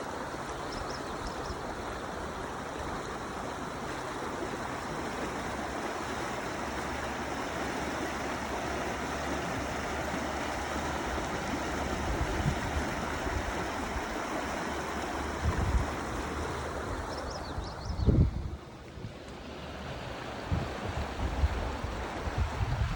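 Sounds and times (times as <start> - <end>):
stream water flowing: 0.0 - 22.9
wind buffeting microphone: 8.4 - 22.9.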